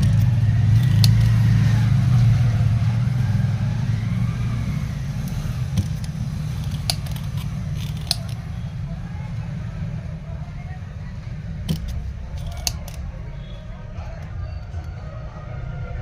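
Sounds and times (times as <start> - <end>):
desoldering pump snapping: 0.0 - 2.5, 3.1 - 8.9, 11.4 - 15.0.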